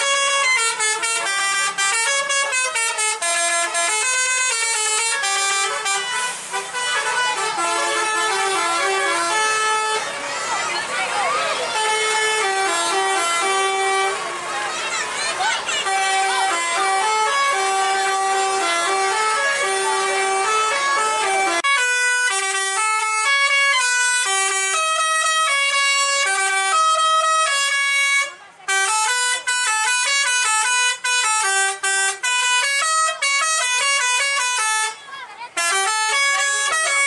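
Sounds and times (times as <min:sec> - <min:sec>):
multi-note electric bus horns: 0:00.0 - 0:37.0.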